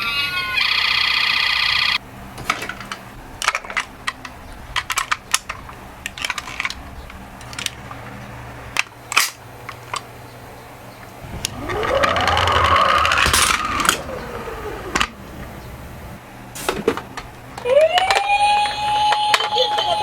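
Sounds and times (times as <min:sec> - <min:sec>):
toy electronic siren: 0:00.0 - 0:02.0, 0:11.5 - 0:14.6, 0:17.7 - 0:20.0
toy cars clicking and tapping: 0:02.7 - 0:10.1, 0:17.2 - 0:20.0.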